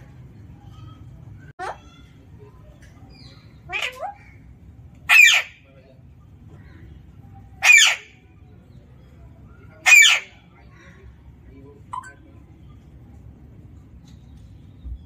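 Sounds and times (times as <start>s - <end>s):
parakeet screeching: 3.7s - 4.4s, 5.1s - 5.6s, 7.6s - 8.2s, 9.8s - 10.4s.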